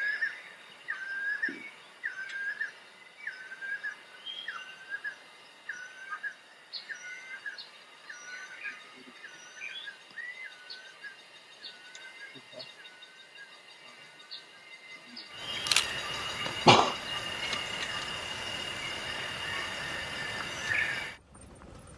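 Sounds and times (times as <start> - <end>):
high bird chips: 15.3 - 21.2.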